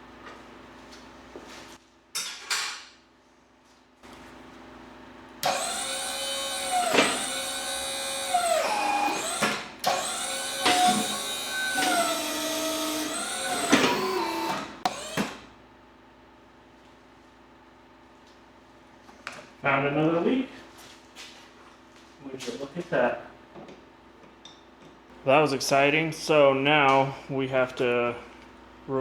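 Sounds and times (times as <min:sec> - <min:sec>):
hydraulic pump motor whining: 0:05.4 - 0:15.5.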